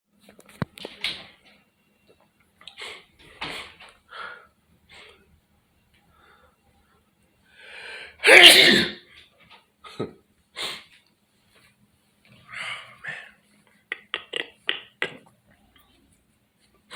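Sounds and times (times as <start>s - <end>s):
person sneezing: 8.2s - 9.1s.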